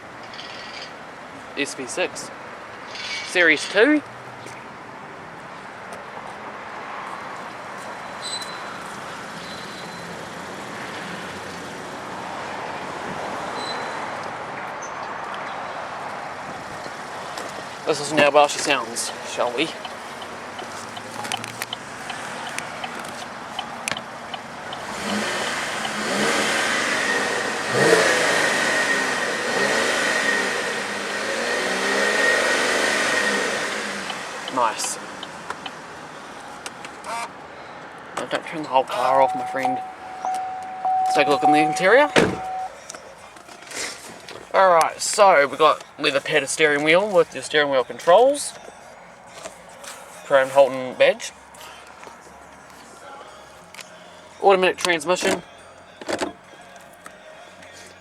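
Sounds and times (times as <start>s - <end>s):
rushing vehicle noise: 0.0s - 58.0s
car engine revving: 17.6s - 35.9s, 38.9s - 42.7s
steady high tone: 38.9s - 42.8s.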